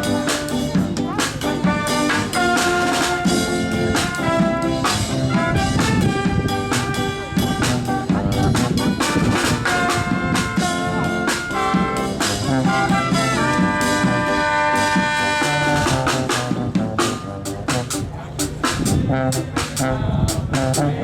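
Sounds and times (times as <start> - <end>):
brass-like held chords: 0.0 - 21.0
steady drum beat: 0.0 - 21.0.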